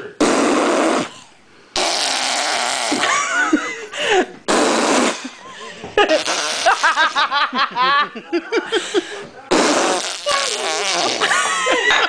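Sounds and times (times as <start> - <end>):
person blowing a raspberry: 0.0 - 3.1, 4.5 - 5.4, 6.1 - 7.2, 9.5 - 11.4.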